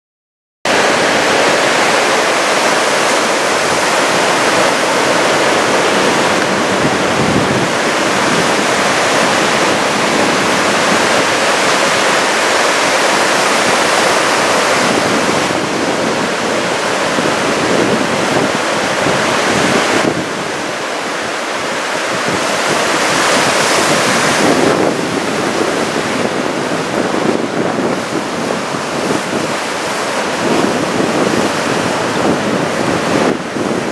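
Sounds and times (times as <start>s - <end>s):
surf breaking and washing in: 0.7s - 33.9s
wind buffeting microphone: 0.7s - 33.9s.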